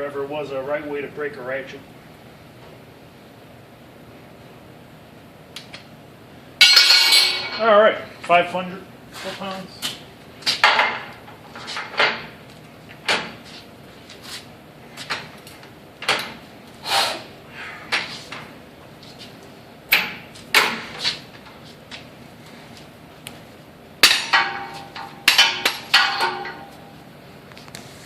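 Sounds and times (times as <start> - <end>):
metal tools knocking and clanking: 6.6 - 7.7, 24.0 - 26.9.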